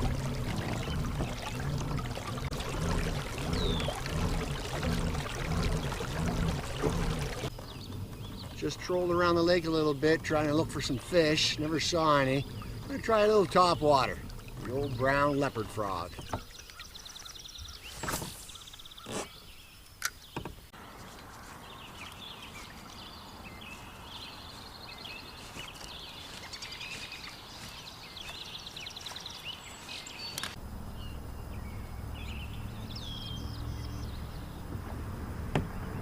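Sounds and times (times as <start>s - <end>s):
low steady hum: 0.0s - 16.2s
birds chirping and singing: 0.0s - 20.5s, 21.4s - 34.7s.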